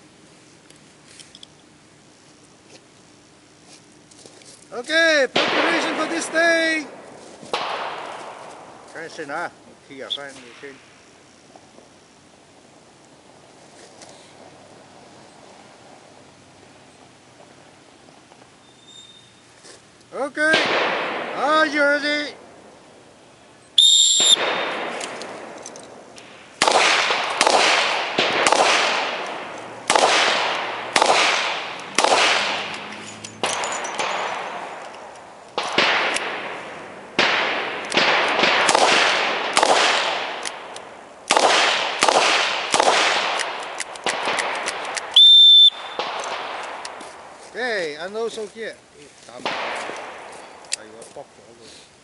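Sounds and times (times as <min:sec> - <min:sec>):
revolver shots: 0:23.9 - 0:40.7.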